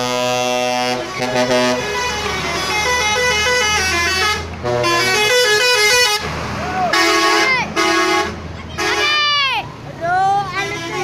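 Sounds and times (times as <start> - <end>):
musical air horn melody: 0.0 - 6.2.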